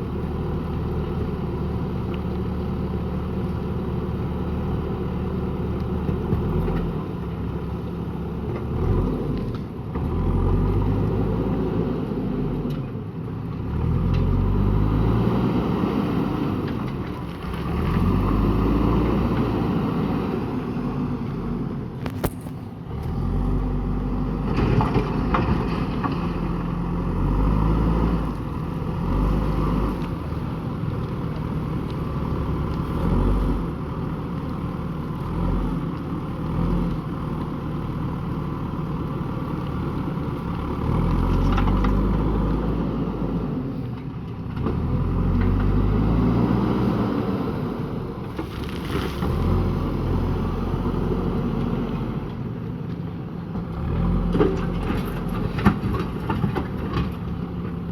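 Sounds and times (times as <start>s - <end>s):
diesel engine under load: 0.0s - 57.9s.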